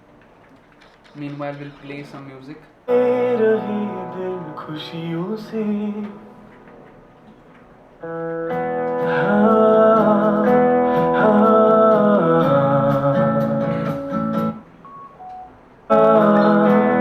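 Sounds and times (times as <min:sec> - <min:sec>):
song with singing and guitar: 0:02.9 - 0:07.4, 0:08.0 - 0:14.6, 0:15.9 - 0:17.0.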